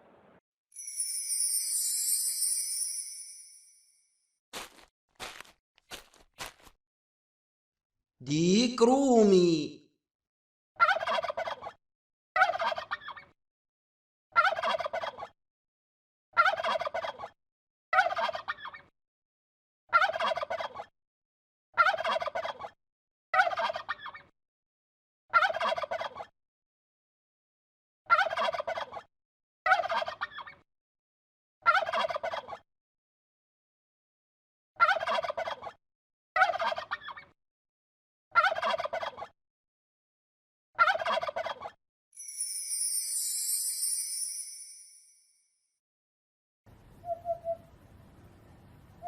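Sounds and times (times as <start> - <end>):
turkey gobbling: 10.8 - 11.7, 12.4 - 13.2, 14.4 - 15.2, 16.4 - 17.3, 18.0 - 18.7, 19.9 - 20.8, 21.8 - 22.6, 25.4 - 26.2, 28.1 - 29.0, 31.7 - 32.6, 34.8 - 35.7, 36.4 - 37.2, 38.4 - 39.3, 40.8 - 41.7.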